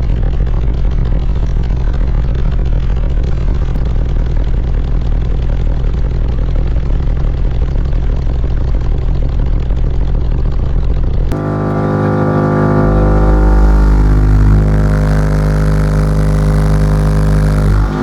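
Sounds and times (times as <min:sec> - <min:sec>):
rattling buzz over deep bass: 0:00.0 - 0:18.0
deep bass from car subwoofers: 0:11.1 - 0:18.0.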